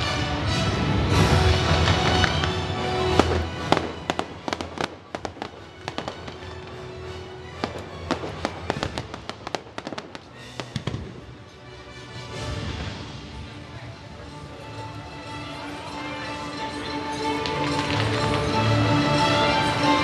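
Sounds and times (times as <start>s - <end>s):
fireworks crackling: 0.0s - 11.6s, 17.2s - 19.7s.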